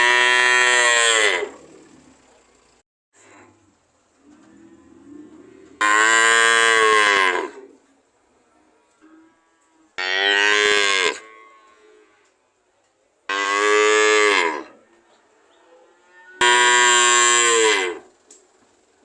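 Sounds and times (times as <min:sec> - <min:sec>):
cow mooing: 0:00.0 - 0:02.0, 0:04.2 - 0:07.8, 0:08.9 - 0:12.4, 0:13.3 - 0:18.1.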